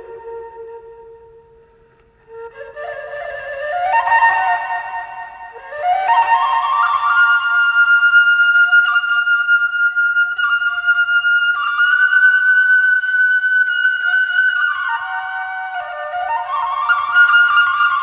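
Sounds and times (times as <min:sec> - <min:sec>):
bamboo flute melody: 0:00.0 - 0:18.0.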